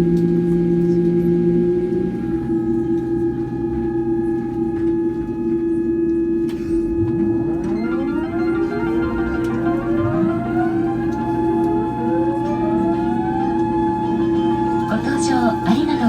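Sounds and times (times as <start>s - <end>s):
aircraft systems humming: 0.2s - 16.0s
machine spinning up whine: 6.4s - 16.0s.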